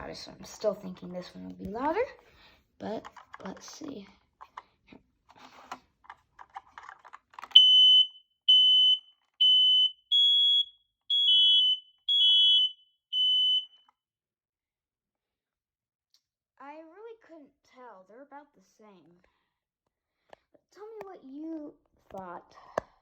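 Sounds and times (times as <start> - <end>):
smoke alarm beeping: 7.5 - 13.8.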